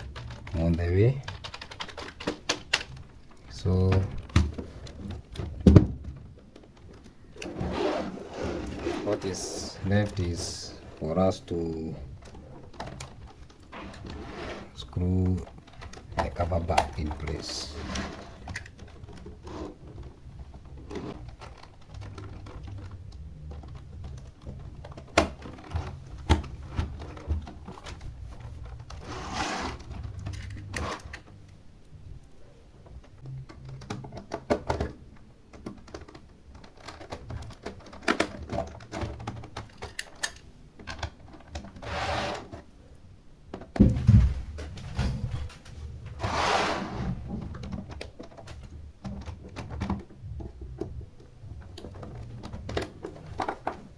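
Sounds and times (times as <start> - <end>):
plastic and tool clicks: 33.0 - 41.8.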